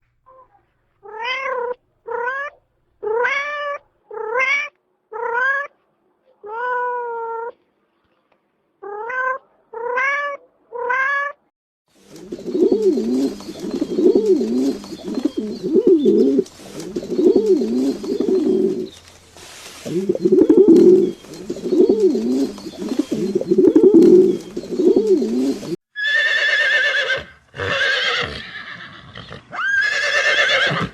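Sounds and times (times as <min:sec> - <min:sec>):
pigeon cooing: 0:12.0 - 0:19.0, 0:19.8 - 0:25.8
steady background hiss: 0:12.0 - 0:25.8.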